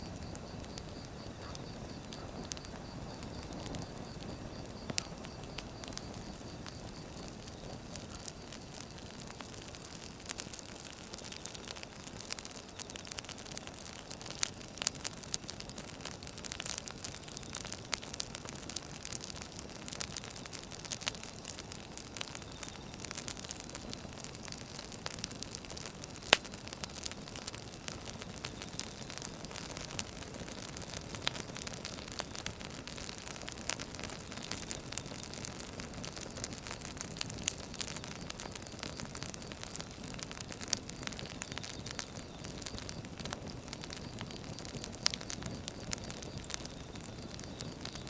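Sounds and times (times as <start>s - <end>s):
fire crackling and popping: 0.0s - 48.0s
firewood burning hiss: 0.0s - 48.0s.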